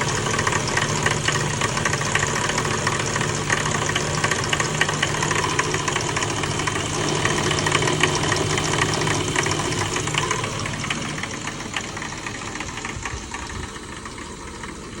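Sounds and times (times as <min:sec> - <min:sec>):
car engine idling: 0:00.0 - 0:15.0
rapid engine ticking knock: 0:00.0 - 0:15.0.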